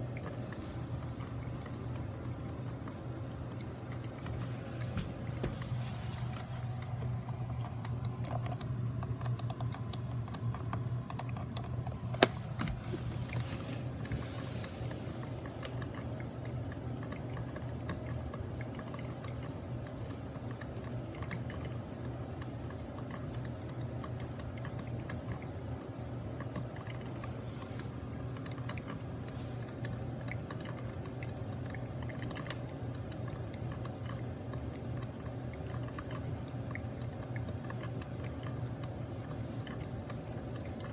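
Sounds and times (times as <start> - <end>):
steady low hum: 0.0 - 40.9
coffee maker pops and sputters: 12.1 - 12.8.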